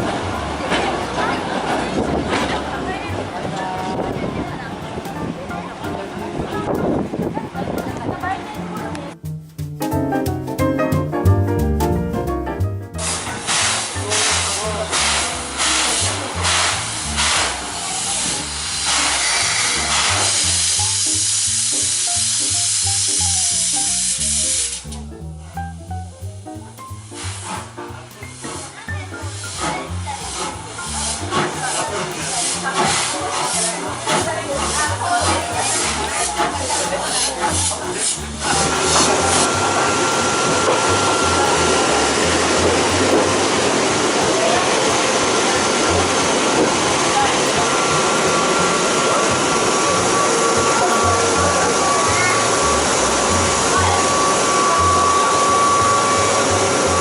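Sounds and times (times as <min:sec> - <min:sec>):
music with stepping bass line: 0:00.0 - 0:57.0
moving train rushing: 0:13.0 - 0:22.8, 0:29.4 - 0:57.0
loud hiss: 0:13.0 - 0:25.0, 0:26.2 - 0:57.0.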